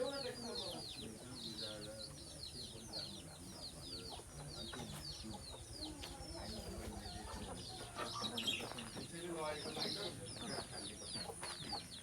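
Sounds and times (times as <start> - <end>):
chicks peeping: 0.0 - 12.0
chickens clucking: 2.8 - 12.0.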